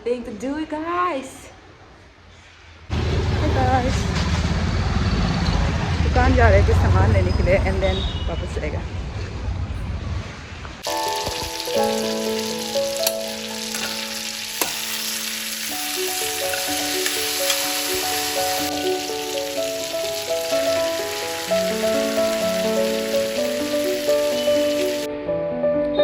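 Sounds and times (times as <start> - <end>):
food sizzling in a pan: 10.8 - 25.1
slow background music: 10.8 - 26.0.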